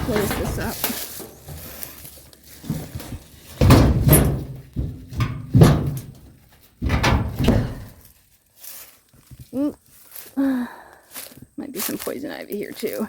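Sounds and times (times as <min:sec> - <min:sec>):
old door scraping shut: 0:00.0 - 0:07.8.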